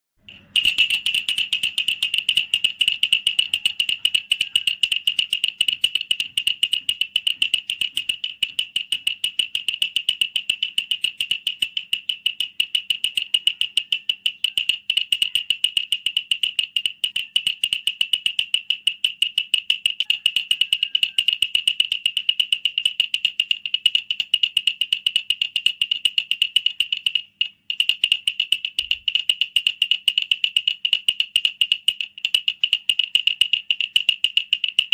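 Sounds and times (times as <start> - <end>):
wooden rattle shaken: 0.2 - 34.9.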